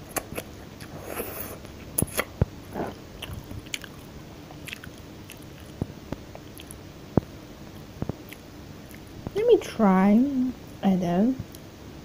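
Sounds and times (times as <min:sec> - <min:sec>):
chewing with wet mouth clicks: 0:01.6 - 0:06.8.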